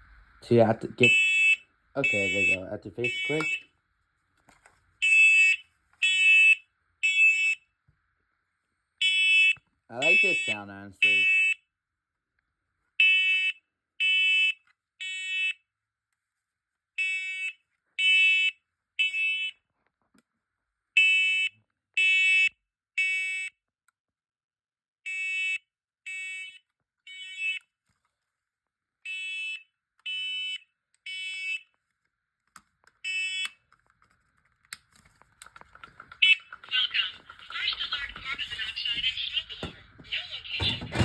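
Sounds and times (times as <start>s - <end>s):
smoke alarm beeping: 0.0s - 3.7s, 5.0s - 7.6s, 9.0s - 11.6s, 37.1s - 41.0s.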